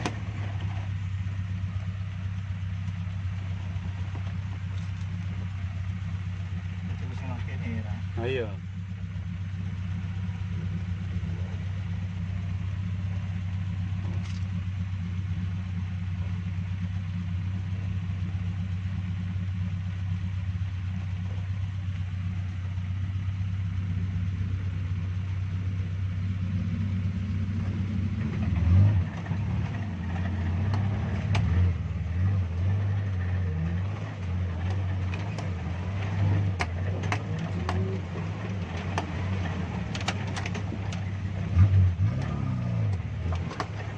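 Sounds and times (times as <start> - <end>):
sharp knocks and clicks: 0.0 - 0.4, 29.6 - 31.6, 34.6 - 41.1, 42.1 - 43.9
off-road vehicle engine running: 0.0 - 43.9.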